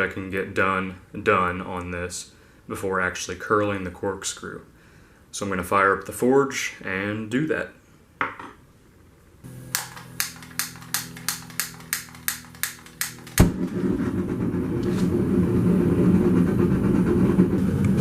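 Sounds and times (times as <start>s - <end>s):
gas burner roaring: 9.4s - 18.0s
motor hum: 9.4s - 18.0s
burner igniting with a thump: 9.5s - 15.6s
igniter clicking: 9.7s - 13.5s.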